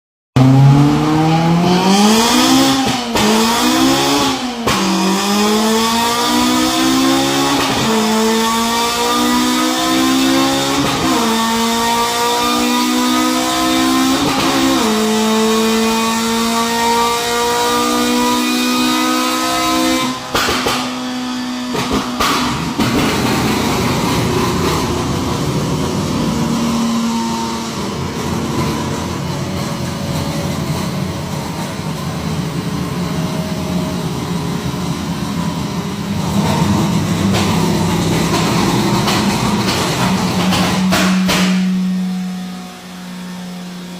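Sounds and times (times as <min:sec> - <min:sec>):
car engine revving: 0:00.4 - 0:43.9
steady rushing noise: 0:21.8 - 0:40.9.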